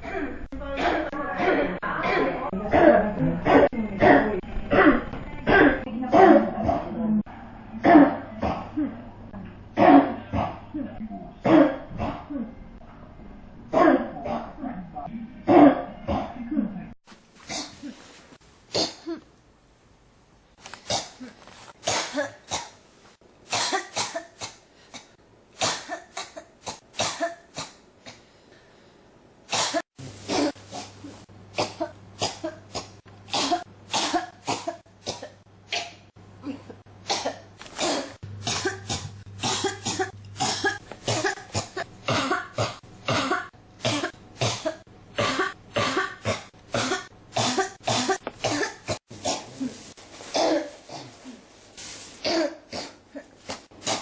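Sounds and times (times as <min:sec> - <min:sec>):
person coughing: 0:00.0 - 0:06.8, 0:09.8 - 0:12.6, 0:15.5 - 0:16.8, 0:17.5 - 0:18.0, 0:18.7 - 0:19.3, 0:20.8 - 0:22.8, 0:23.5 - 0:28.2, 0:31.6 - 0:51.4, 0:52.2 - 0:54.0.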